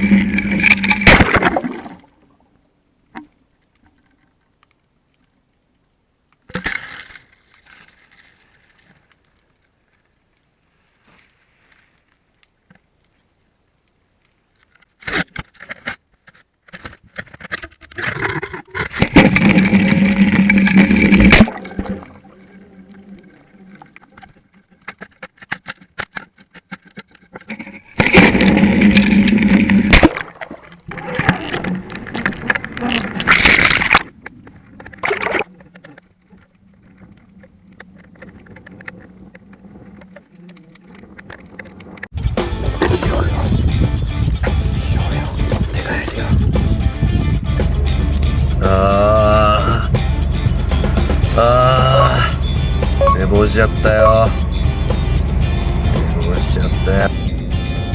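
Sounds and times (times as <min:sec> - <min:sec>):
underwater scraping and rushing water: 0:00.0 - 0:02.5, 0:17.5 - 0:25.5, 0:26.4 - 0:57.8
clicks and rubbing: 0:11.7 - 0:42.1.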